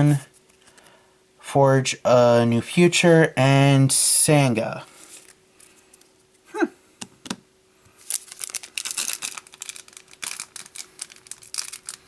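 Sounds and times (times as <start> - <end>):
foil pack crinkling and tearing: 7.9 - 12.0.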